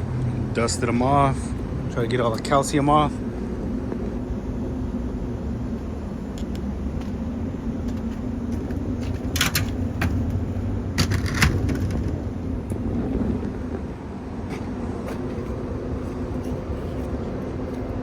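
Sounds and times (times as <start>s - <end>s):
cooler panels scraping and knocking: 7.9s - 12.4s, 14.4s - 17.2s
low rumble: 9.7s - 14.4s.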